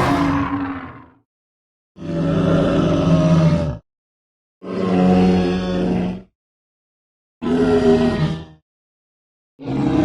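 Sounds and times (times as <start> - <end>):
low pitched creature call: 0.0 - 1.2.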